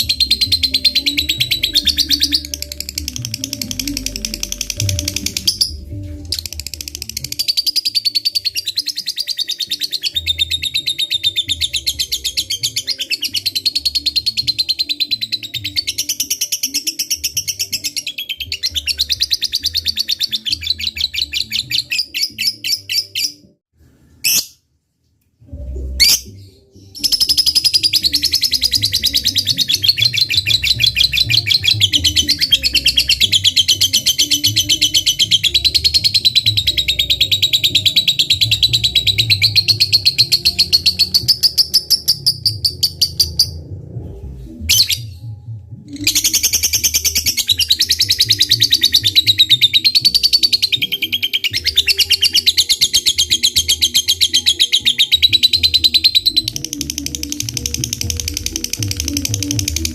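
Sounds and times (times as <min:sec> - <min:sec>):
lovebird chirping rapidly: 0:26.0 - 0:43.6.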